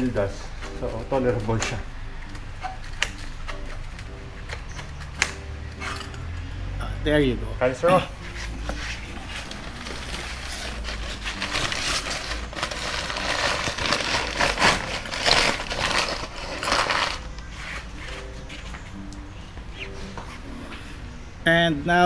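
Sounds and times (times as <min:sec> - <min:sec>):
metallic clinks and scrapes: 0:05.8 - 0:06.4, 0:08.2 - 0:18.3.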